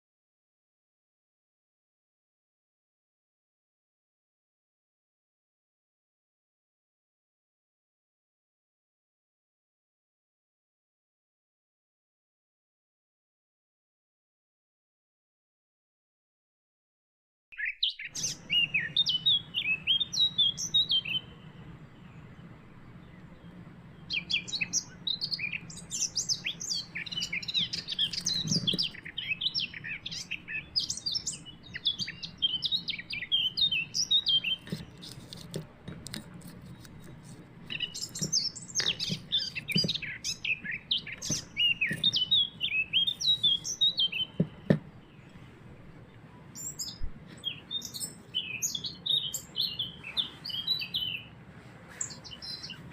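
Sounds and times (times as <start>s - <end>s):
small bird chirping: 17.5s - 45.3s, 46.6s - 52.9s
faint low hum: 18.0s - 52.9s.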